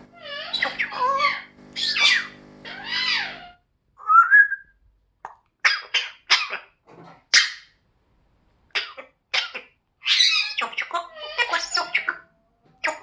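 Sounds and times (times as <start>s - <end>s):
parrot squawking: 0.2s - 3.6s, 5.6s - 7.7s, 8.7s - 13.0s
parrot whistle: 0.2s - 4.7s.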